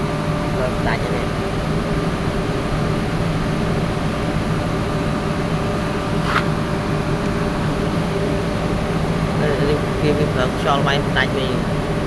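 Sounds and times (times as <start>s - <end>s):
electric compressor humming: 0.0s - 12.0s.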